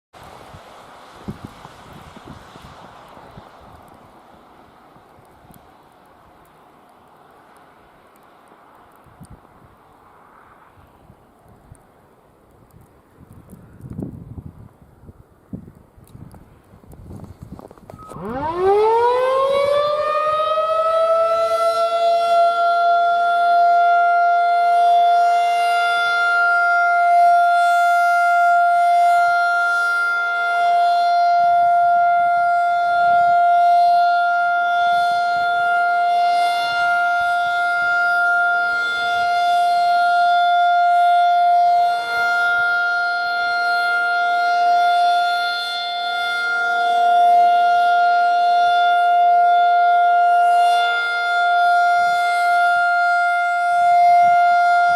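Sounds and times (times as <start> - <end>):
rotating warning siren steady tone: 17.1 - 54.9.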